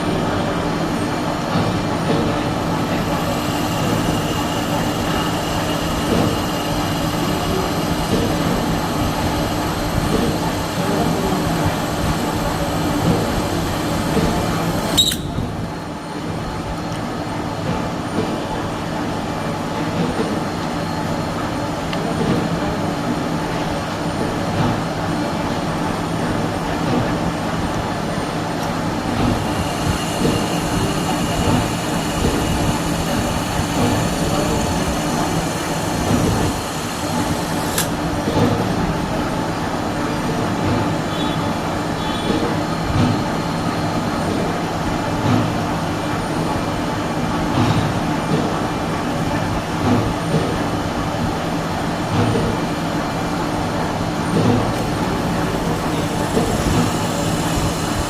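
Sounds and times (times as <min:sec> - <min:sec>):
milling machine humming: 0:00.0 - 0:58.0
sharp click: 0:15.0 - 0:15.4.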